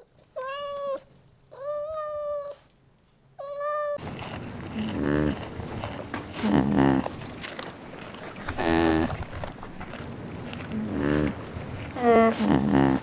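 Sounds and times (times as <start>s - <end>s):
cattle mooing: 4.7s - 7.2s, 8.4s - 9.2s, 10.7s - 13.0s.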